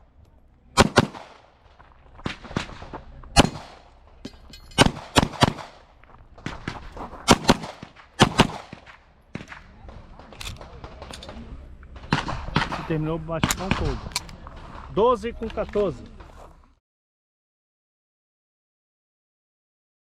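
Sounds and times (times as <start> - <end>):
pistol shots in quick pairs: 0.8 - 1.5, 2.2 - 4.0, 4.8 - 11.4, 12.0 - 14.2.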